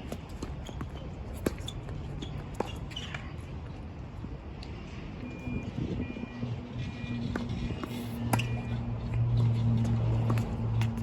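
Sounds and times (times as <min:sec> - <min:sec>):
wind buffeting microphone: 0:05.5 - 0:08.0.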